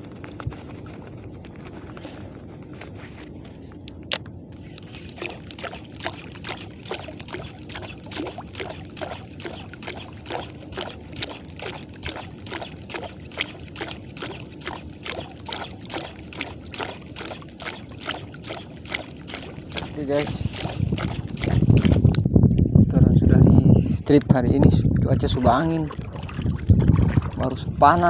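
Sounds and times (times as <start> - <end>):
water sloshing against boat hull: 4.6 - 22.3, 24.1 - 28.0
low rumble: 19.5 - 28.0.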